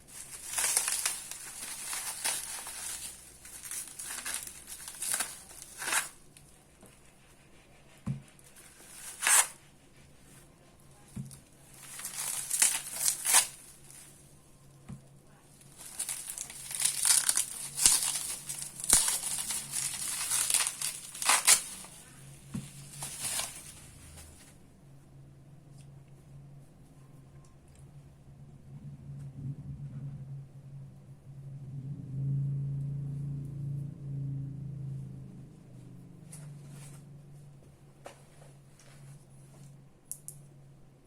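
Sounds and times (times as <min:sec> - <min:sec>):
packaging crinkling and rustling: 0:00.0 - 0:06.6, 0:08.4 - 0:09.6, 0:11.0 - 0:14.3, 0:15.5 - 0:24.6.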